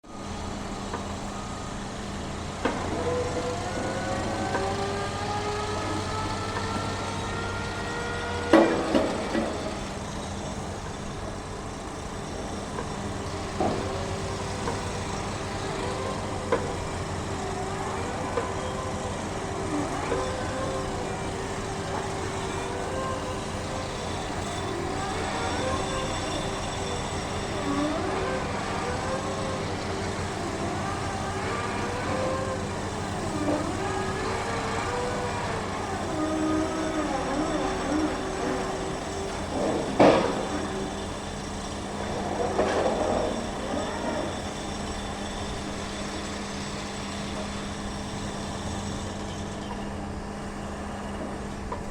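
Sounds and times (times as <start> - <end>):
drilling rig engine rumble and whine: 0.0 - 51.9.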